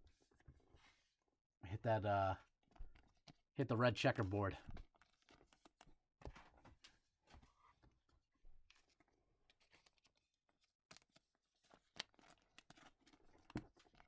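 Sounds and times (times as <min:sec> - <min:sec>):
trading cards rustling and clicking: 0:08.7 - 0:14.0.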